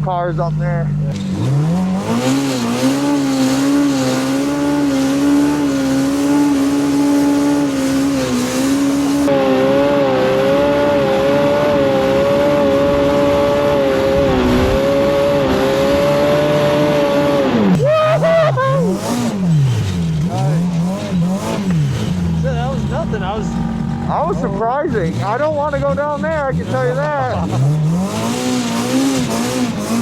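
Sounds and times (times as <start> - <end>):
engine revving at high revs: 0.6 - 30.0.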